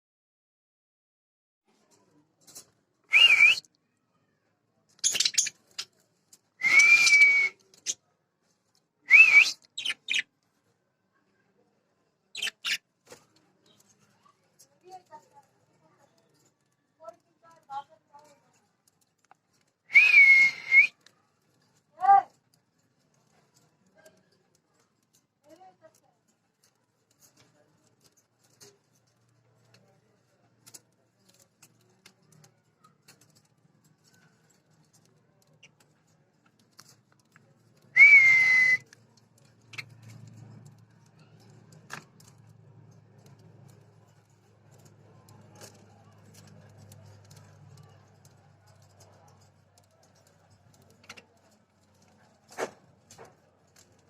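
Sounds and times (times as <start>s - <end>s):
budgerigars whistling and chirping: 5.0s - 5.5s, 9.8s - 10.2s
loud whistle: 6.6s - 7.6s, 19.9s - 20.9s, 38.0s - 38.8s.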